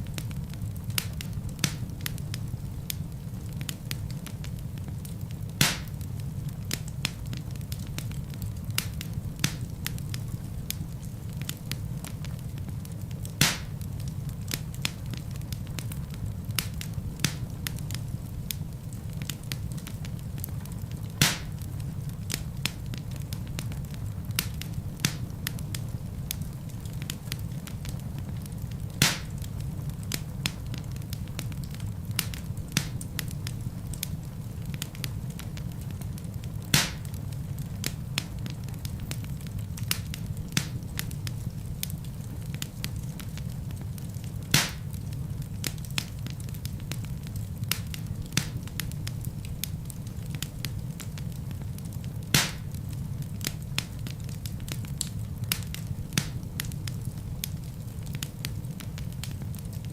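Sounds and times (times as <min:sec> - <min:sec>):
fire popping: 0:00.0 - 0:59.9
wood fire crackling: 0:00.0 - 0:59.9.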